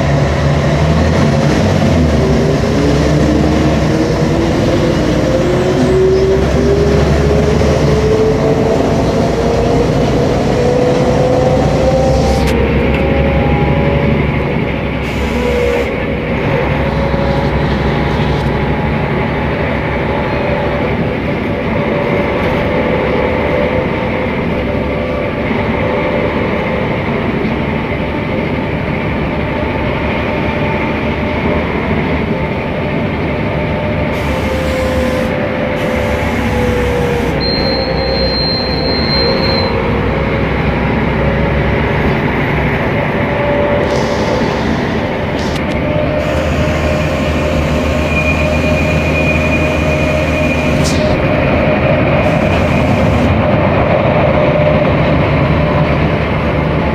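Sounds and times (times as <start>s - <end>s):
bus engine and drivetrain noise: 0.0s - 56.9s
brief high whistle: 34.2s - 39.8s.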